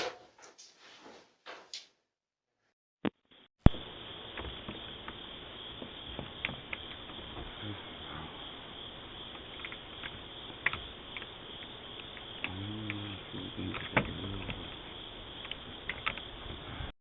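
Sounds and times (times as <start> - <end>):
steady outdoor hiss: 3.7 - 16.9
faint clicks: 9.2 - 16.6.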